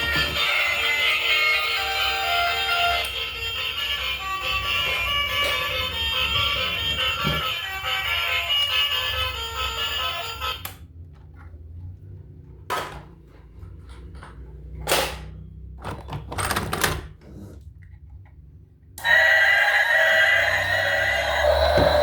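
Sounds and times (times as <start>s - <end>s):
music: 0.0s - 10.7s, 19.1s - 22.0s
loud sound: 19.0s - 22.0s.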